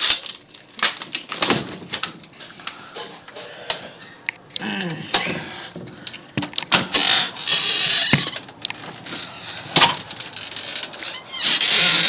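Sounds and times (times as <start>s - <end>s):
handling rustling: 4.0s - 12.0s
sharp clicks and knocks: 5.2s - 12.0s.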